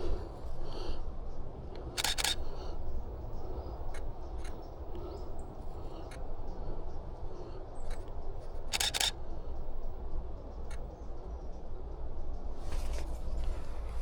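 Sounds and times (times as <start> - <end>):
low steady rumble: 0.0 - 14.0
camera shutter clicking: 2.0 - 2.4, 8.7 - 9.2.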